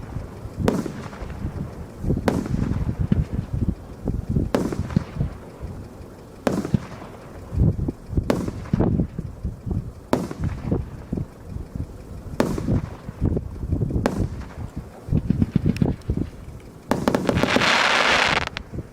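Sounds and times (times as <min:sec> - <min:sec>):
firework bangs: 0:00.6 - 0:01.5, 0:02.2 - 0:03.4, 0:04.5 - 0:05.2, 0:06.4 - 0:07.1, 0:14.0 - 0:16.0, 0:16.9 - 0:18.6
low rumbling booms: 0:07.5 - 0:18.9.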